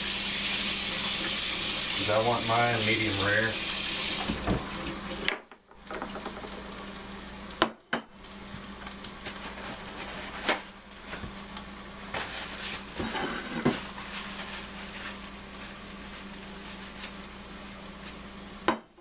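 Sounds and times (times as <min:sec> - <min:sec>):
steak sizzling in foil: 0:00.0 - 0:04.4, 0:08.2 - 0:11.2, 0:11.8 - 0:18.6.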